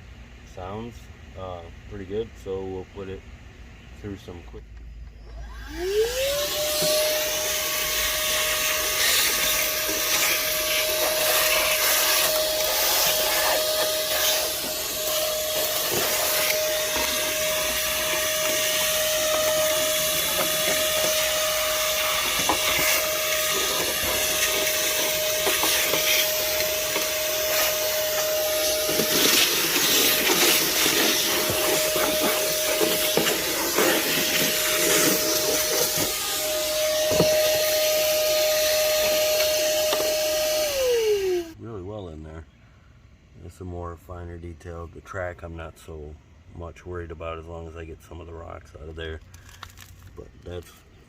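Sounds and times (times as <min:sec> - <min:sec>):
shop vacuum running: 0:05.2 - 0:41.6.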